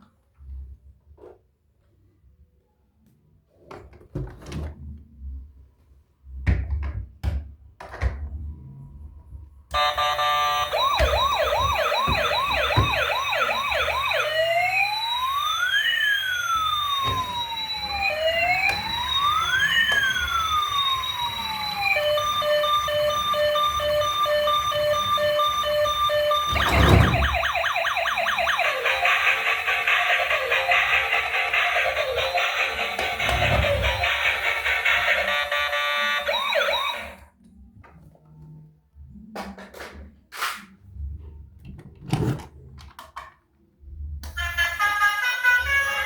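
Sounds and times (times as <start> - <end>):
toy electronic siren: 9.7 - 37.3, 44.2 - 46.0.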